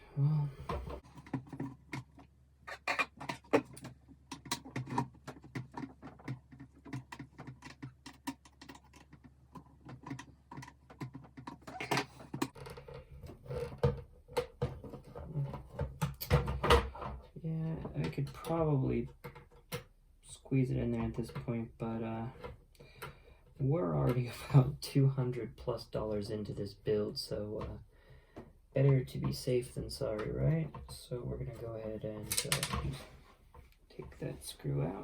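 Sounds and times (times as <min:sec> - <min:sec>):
plastic parts clicking and tapping: 0:00.7 - 0:19.9, 0:32.1 - 0:33.0.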